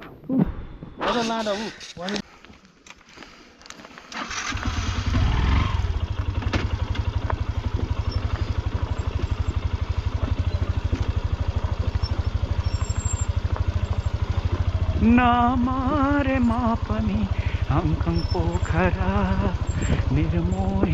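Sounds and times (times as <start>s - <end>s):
motorcycle engine idling: 4.2s - 20.9s.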